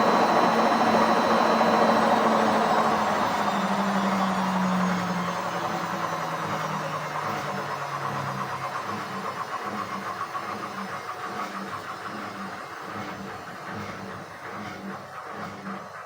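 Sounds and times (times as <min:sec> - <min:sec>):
washing machine motor humming: 0:00.0 - 0:11.7.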